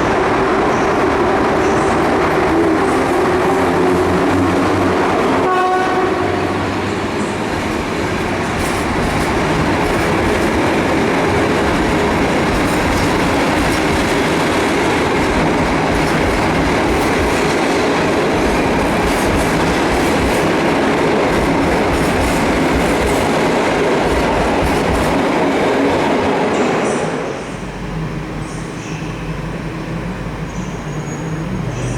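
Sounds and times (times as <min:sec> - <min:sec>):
train wheels on rails: 0:00.0 - 0:31.9
clickety-clack over rail joints: 0:07.5 - 0:26.8.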